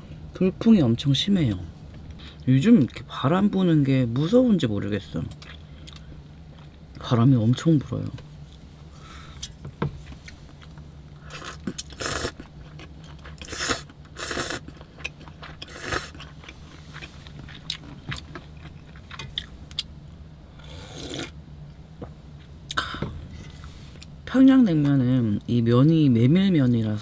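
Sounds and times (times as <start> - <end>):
steady low hum: 0.0 - 27.0
slurping noodles: 13.4 - 14.6, 15.6 - 16.2.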